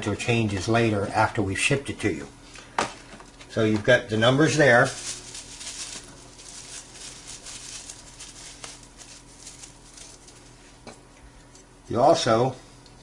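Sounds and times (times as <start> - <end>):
steady low hum: 0.0 - 13.0
card rustling and ticking: 4.8 - 10.6.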